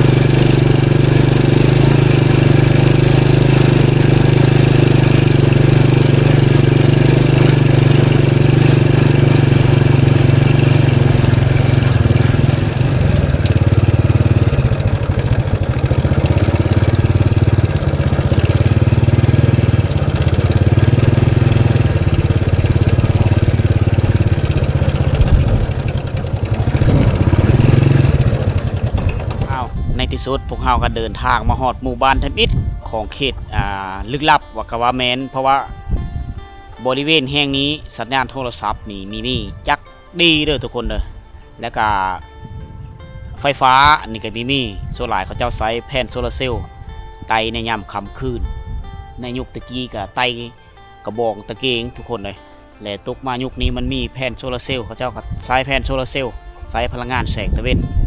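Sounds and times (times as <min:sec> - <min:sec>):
vehicle engine humming: 0:00.0 - 0:58.0.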